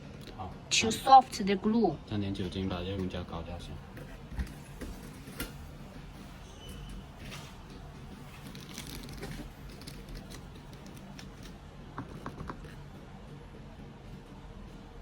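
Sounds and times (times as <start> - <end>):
cotton swab scratching and rubbing: 8.0 - 12.8.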